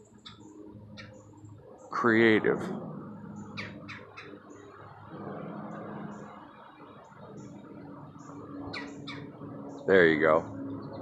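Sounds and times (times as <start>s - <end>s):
low steady hum: 0.0s - 11.0s
small bird chirps: 0.1s - 1.9s, 3.1s - 5.0s, 7.0s - 11.0s.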